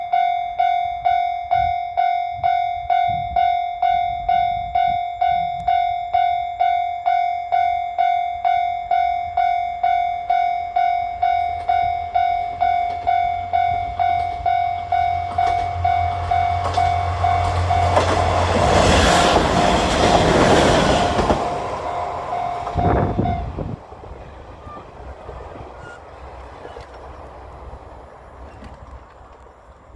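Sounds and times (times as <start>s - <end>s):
level-crossing warning bell: 0.0s - 23.8s.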